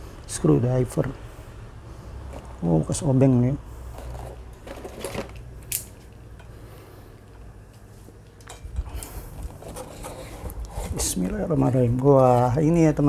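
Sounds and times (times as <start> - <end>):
packaging rustling: 4.0 - 5.5.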